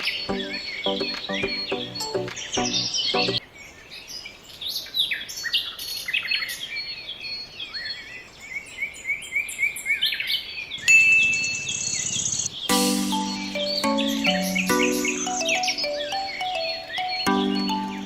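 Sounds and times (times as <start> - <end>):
multi-tone pitched sound: 0.0 - 3.4, 12.7 - 18.0
small birds chirping: 0.0 - 18.0
sharp high note: 12.7 - 18.0.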